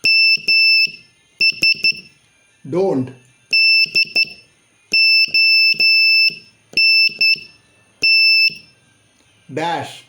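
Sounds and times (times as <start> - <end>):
morse code beeps: 0.0 - 2.1, 3.5 - 8.8.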